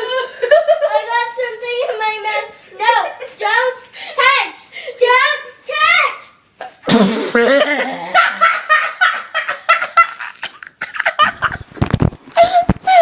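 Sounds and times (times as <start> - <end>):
laughing in quick pulses: 6.9 - 8.2.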